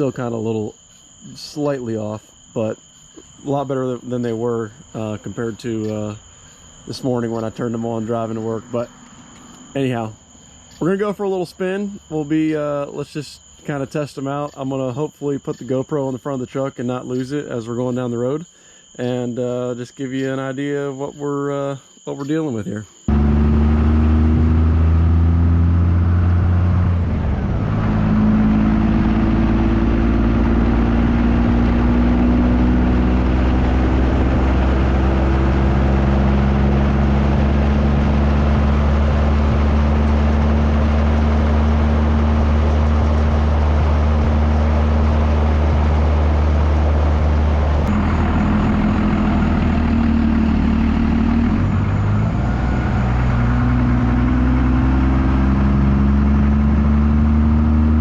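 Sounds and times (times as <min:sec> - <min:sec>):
road noise: 0:00.0 - 0:14.9, 0:22.2 - 0:58.0
diesel truck engine running: 0:23.1 - 0:58.0.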